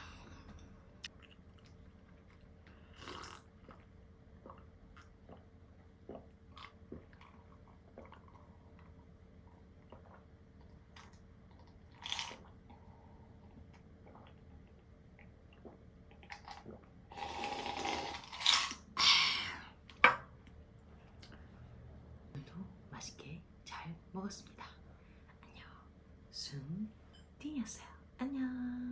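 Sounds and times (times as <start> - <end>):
soft chewing: 0.4 - 16.9.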